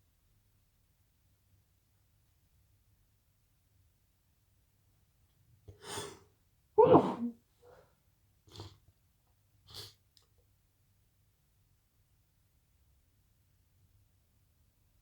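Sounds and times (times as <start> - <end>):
person sniffing: 5.8 - 6.2, 6.8 - 7.3, 9.7 - 10.0
person sneezing: 6.8 - 7.4.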